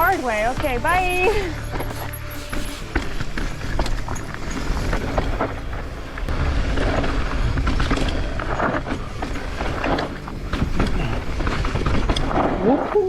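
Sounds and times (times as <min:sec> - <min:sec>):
wind rumble on microphone: 0:04.3 - 0:13.0.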